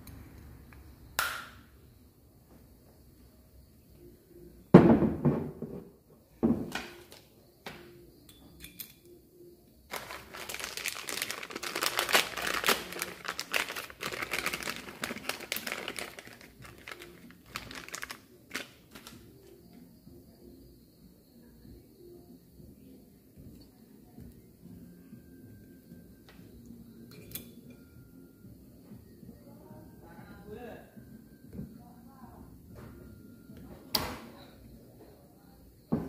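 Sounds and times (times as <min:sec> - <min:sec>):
crackling and rubbing: 0:09.9 - 0:19.2.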